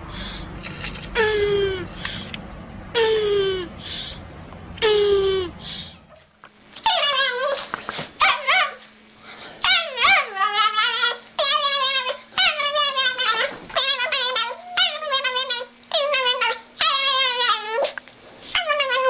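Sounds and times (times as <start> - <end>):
faint steady hum: 0.0 - 6.6
dog whining: 1.2 - 2.3, 3.0 - 4.2, 4.8 - 6.2, 6.9 - 8.8, 9.6 - 17.9, 18.5 - 19.0.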